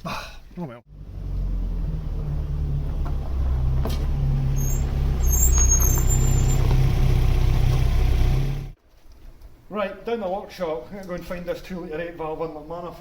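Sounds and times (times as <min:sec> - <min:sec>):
car engine and road rumble: 0:00.9 - 0:08.8.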